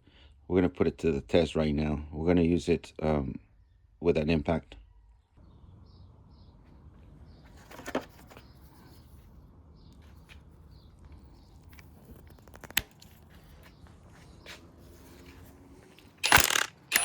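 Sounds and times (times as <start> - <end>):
sharp clicks of sockets: 16.2 - 17.0.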